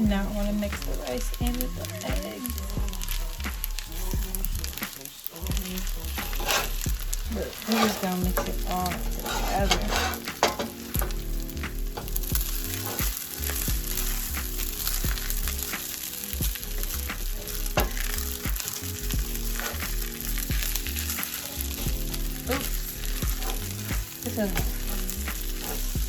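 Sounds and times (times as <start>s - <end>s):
rice and egg sizzling in pan: 0.0s - 26.0s
utensil scraping and knocking pan: 6.2s - 15.9s, 21.7s - 26.0s.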